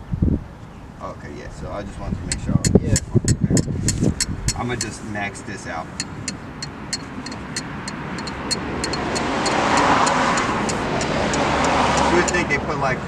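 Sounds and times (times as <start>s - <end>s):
road vehicle passing: 0.4s - 13.0s
light ticking: 5.9s - 12.4s.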